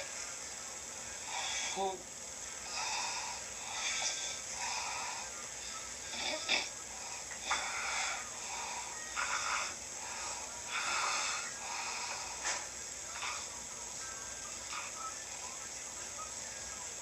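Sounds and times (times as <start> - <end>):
person snoring: 1.2 - 2.0, 2.6 - 5.4, 6.1 - 13.6.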